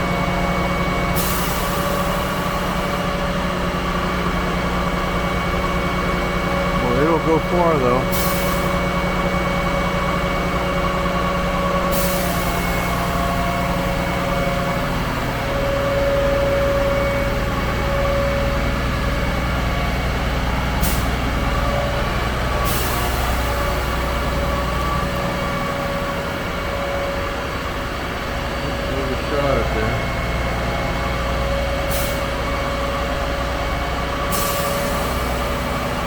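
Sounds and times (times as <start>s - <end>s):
truck engine whining: 0.0s - 36.0s.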